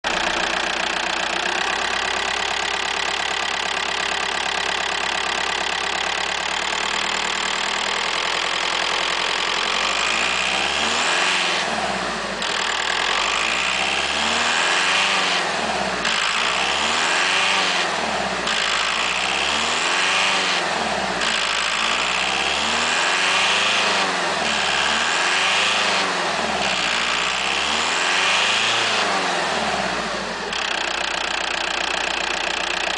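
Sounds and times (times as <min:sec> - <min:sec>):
diesel engine idling and revving: 0:00.0 - 0:32.9.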